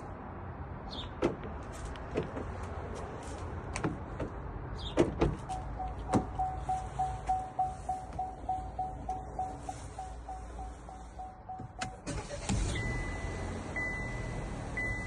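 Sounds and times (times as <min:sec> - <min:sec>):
car door and latch clunks: 0:01.2 - 0:02.5, 0:03.8 - 0:06.4
car warning chime beeping: 0:05.5 - 0:15.0.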